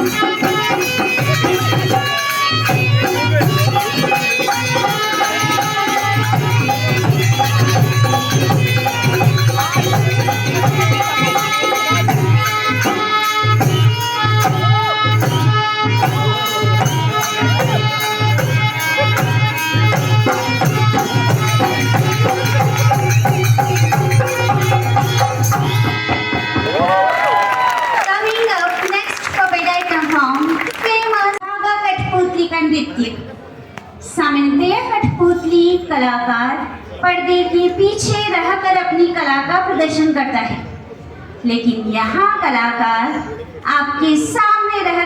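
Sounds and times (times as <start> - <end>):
folk music with hand drum: 0.0 - 27.7.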